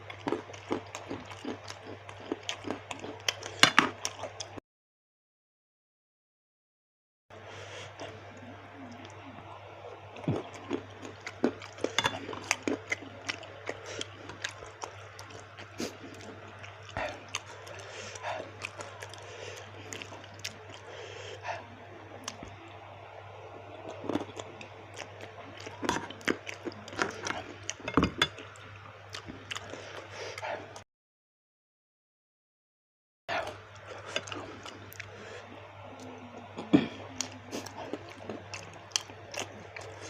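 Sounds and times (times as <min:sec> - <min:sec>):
chewing: 0:00.0 - 0:04.6, 0:10.1 - 0:22.5, 0:23.8 - 0:30.8, 0:33.4 - 0:40.0.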